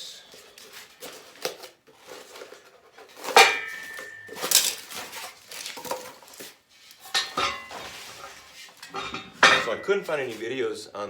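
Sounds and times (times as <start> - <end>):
steel clamp parts clanking: 3.2 - 10.3.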